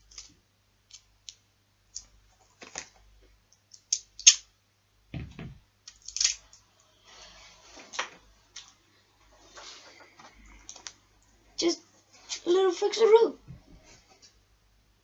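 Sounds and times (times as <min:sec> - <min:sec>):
small objects clicking and tapping: 0:00.9 - 0:04.4
dull knock: 0:05.1 - 0:05.6.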